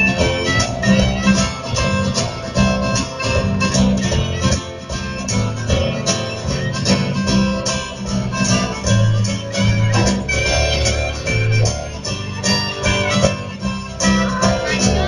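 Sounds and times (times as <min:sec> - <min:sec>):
acoustic guitar: 0:00.0 - 0:15.0
double bass: 0:00.0 - 0:15.0
steady drum beat: 0:00.0 - 0:15.0.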